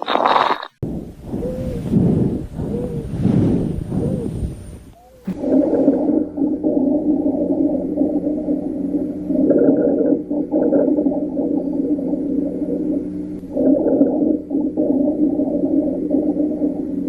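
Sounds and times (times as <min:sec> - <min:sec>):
breath sounds through stethoscope: 0:00.0 - 0:17.0.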